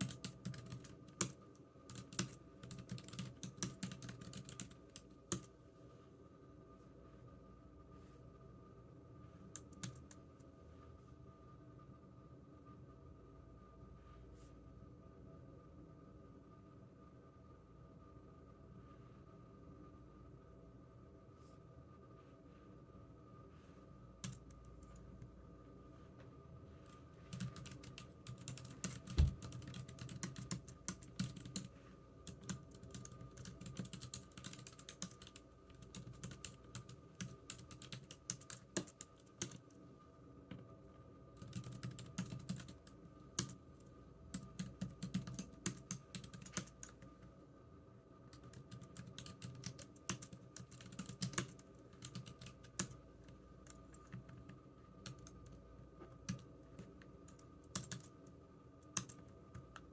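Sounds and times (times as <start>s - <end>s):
typing on computer keyboard: 0.0s - 5.5s, 9.6s - 10.2s, 24.2s - 25.0s, 27.3s - 31.7s, 32.3s - 39.6s, 41.4s - 43.6s, 44.3s - 47.1s, 48.3s - 55.6s, 56.2s - 59.9s.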